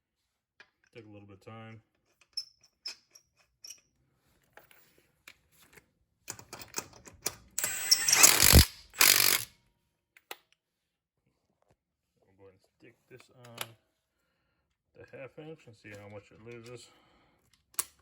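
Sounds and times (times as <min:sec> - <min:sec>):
impact wrench running: 0:07.6 - 0:09.5.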